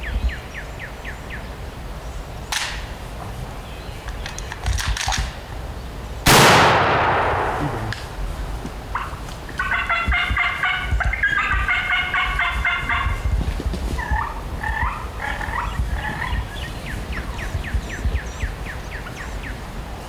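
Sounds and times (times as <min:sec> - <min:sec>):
turkey gobbling: 0:08.9 - 0:19.6.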